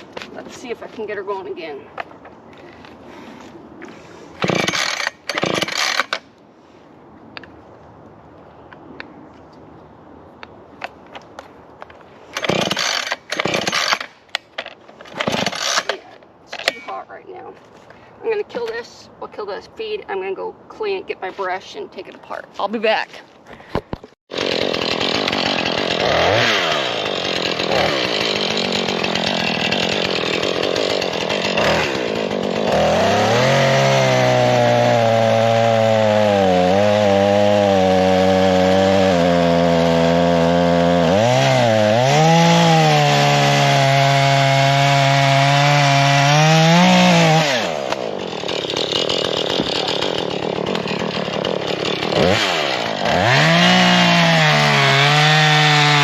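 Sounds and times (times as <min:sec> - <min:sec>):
chainsaw cutting wood: 0:03.9 - 0:06.3, 0:12.3 - 0:16.9, 0:24.3 - 0:56.0.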